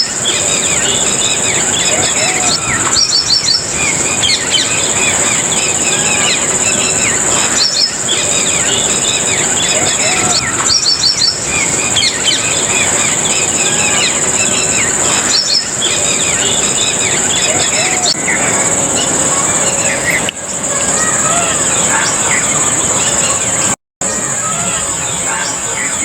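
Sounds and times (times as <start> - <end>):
high insect drone: 0.0 - 26.0
small birds chirping: 0.0 - 26.0.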